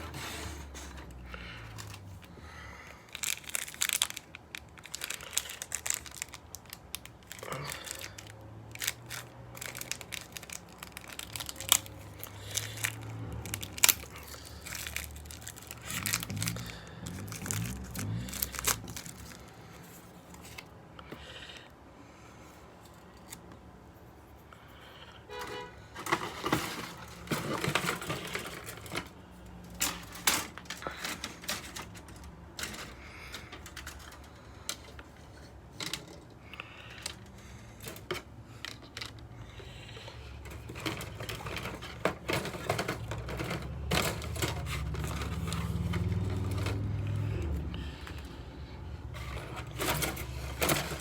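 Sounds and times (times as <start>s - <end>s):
plastic bag crinkling: 3.1s - 20.6s, 40.4s - 47.6s
plastic runners clattering: 26.0s - 35.0s, 40.4s - 48.2s, 49.1s - 51.0s.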